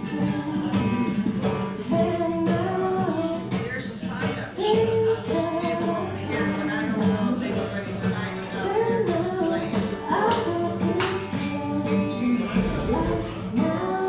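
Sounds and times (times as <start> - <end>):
acoustic guitar: 0.0 - 14.0
woman singing: 0.0 - 14.0
drum: 12.4 - 13.8.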